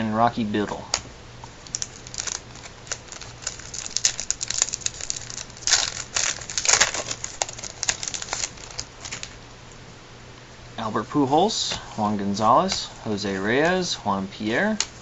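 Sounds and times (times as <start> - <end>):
wrapper crinkling and rustling: 0.9 - 9.4.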